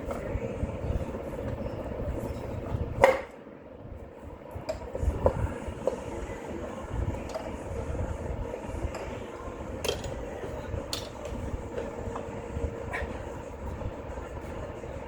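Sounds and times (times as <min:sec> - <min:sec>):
low rumbling handling noise: 0:04.3 - 0:15.0.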